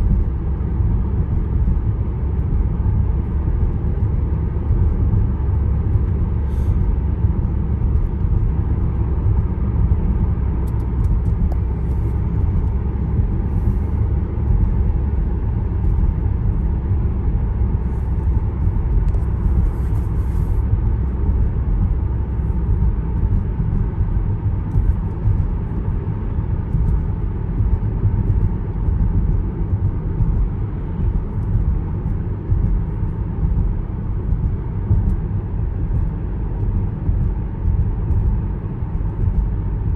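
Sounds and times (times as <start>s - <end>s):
car road and engine rumble: 0.0s - 39.9s.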